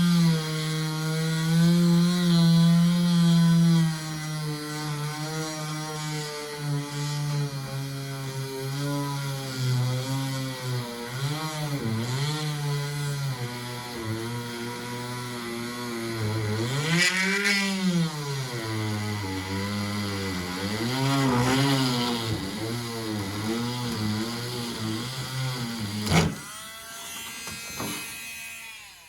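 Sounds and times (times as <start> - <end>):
rotary tool cutting plastic: 5.9 - 29.0.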